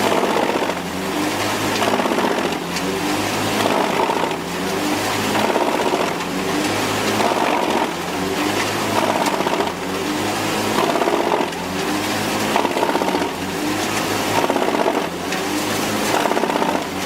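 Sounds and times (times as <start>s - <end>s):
wood chipper running: 0.0s - 17.0s.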